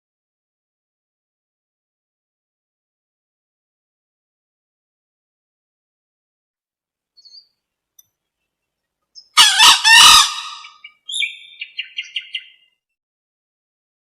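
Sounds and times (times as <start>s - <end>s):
junglefowl calling: 9.2s - 12.6s.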